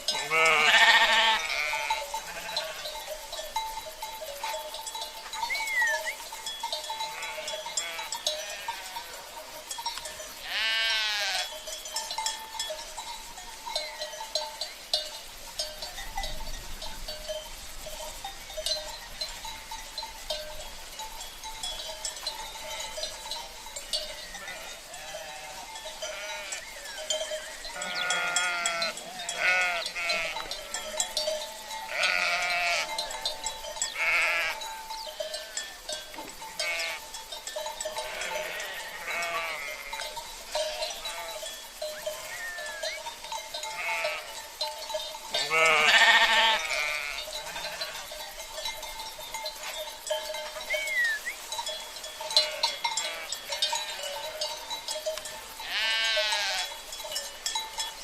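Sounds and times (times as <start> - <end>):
livestock bells ringing: 0.0 - 58.0
sheep bleating: 0.1 - 3.0, 7.0 - 9.2, 10.4 - 11.5, 24.3 - 26.7, 27.7 - 31.0, 31.9 - 33.0, 34.0 - 34.6, 36.6 - 37.0, 38.0 - 40.0, 40.6 - 41.4, 42.2 - 43.0, 43.7 - 44.4, 45.4 - 48.1, 52.4 - 54.2, 55.6 - 56.7.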